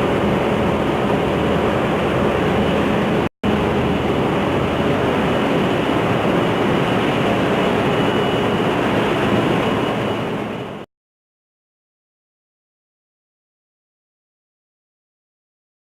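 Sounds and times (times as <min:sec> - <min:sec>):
engine room machinery din: 0:00.0 - 0:10.8
faint high whine: 0:00.0 - 0:10.9.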